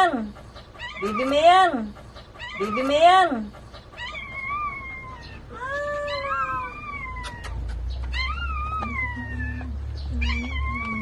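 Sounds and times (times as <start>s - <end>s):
puppies crying: 0.6s - 11.0s.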